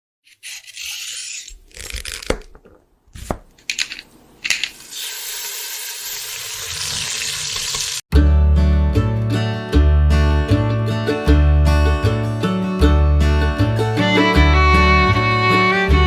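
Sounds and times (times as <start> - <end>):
utensils knocking and scraping: 2.2 - 4.8
food sizzling in a pan: 4.8 - 8.0
guitar music: 8.1 - 16.0.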